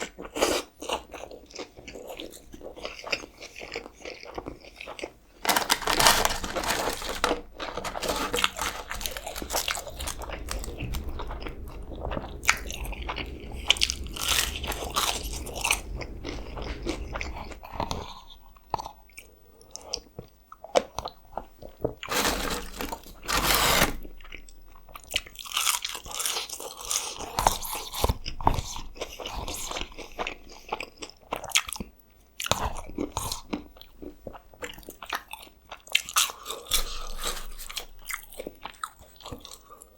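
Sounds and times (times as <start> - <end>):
crunchy chewing of food: 0.0 - 17.3.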